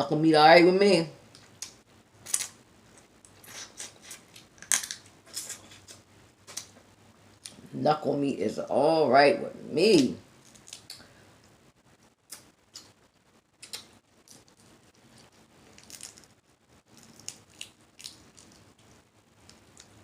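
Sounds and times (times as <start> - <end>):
crab shell clicks and crunches: 10.4 - 11.1, 13.6 - 20.0.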